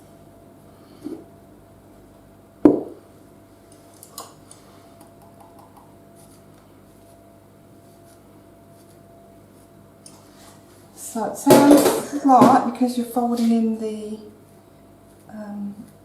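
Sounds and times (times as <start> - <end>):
utensil knocking bowl: 2.7 - 3.0.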